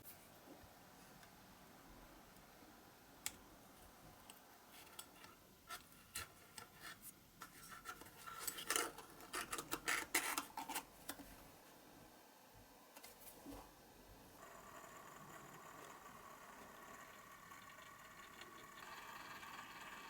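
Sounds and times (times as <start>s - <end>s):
small hard parts clicking and scraping: 4.8s - 11.2s.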